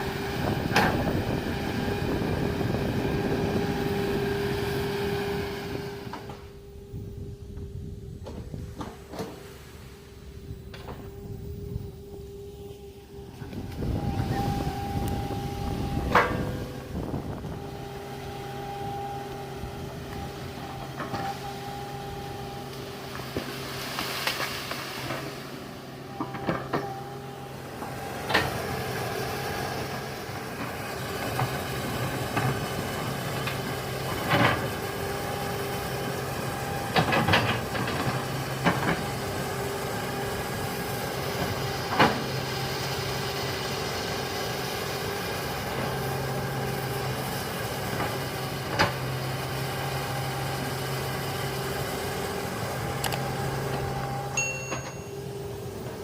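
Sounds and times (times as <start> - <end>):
excavator diesel engine running: 0.0 - 56.0
sharp metallic clanks: 54.4 - 55.2.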